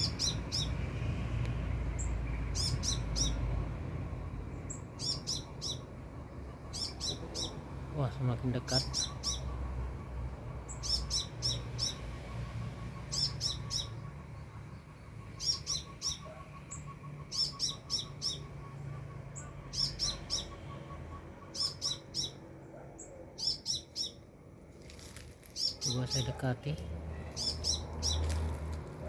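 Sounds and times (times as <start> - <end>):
bird chirping high and sharp: 0.0 - 0.8, 2.5 - 3.4, 4.7 - 5.9, 6.7 - 7.6, 10.7 - 12.0, 13.1 - 14.0, 15.3 - 18.6, 19.7 - 20.8, 21.4 - 22.4, 23.4 - 24.2, 25.5 - 26.4, 27.2 - 28.5.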